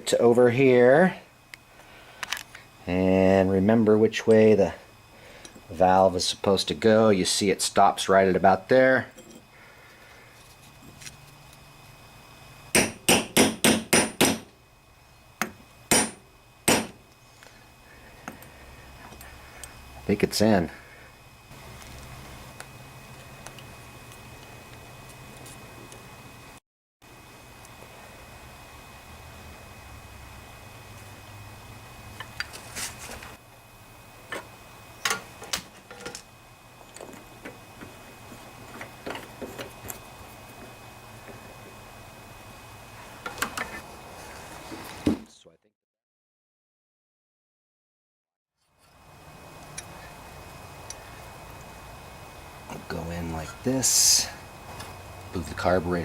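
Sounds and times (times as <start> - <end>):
hammer tapping metal: 12.8 - 14.5, 15.4 - 17.0.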